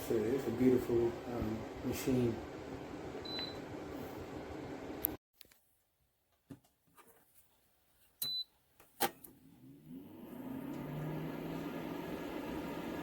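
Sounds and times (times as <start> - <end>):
heater fan whirring: 0.0 - 5.2, 9.7 - 13.0.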